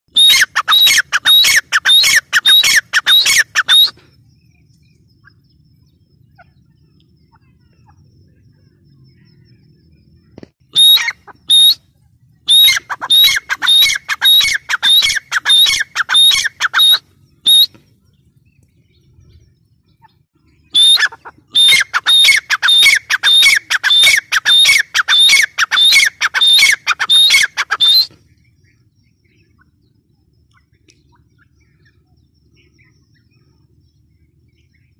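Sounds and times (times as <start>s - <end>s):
francolin calling shrill notes: 10.7s - 11.8s, 12.5s - 17.7s, 20.7s - 28.1s.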